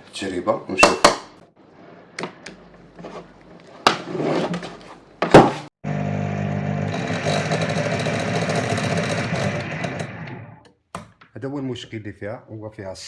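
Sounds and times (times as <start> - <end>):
stand mixer motor running: 5.9 - 10.6.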